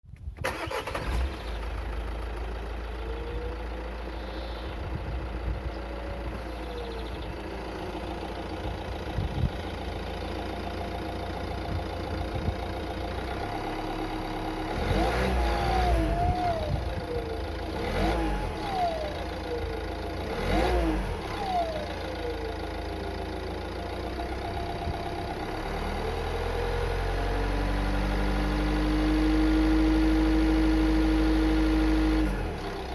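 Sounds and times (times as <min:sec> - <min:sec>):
engine whine: 0:00.2 - 0:32.9
diesel engine idling: 0:00.4 - 0:32.9
engine revving: 0:14.0 - 0:19.6, 0:20.2 - 0:22.3, 0:25.6 - 0:32.9.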